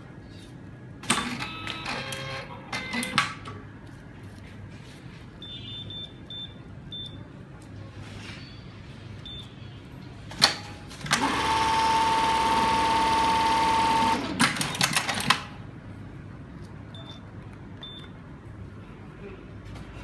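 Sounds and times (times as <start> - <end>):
sewing machine stitching with whine: 11.0 - 15.3.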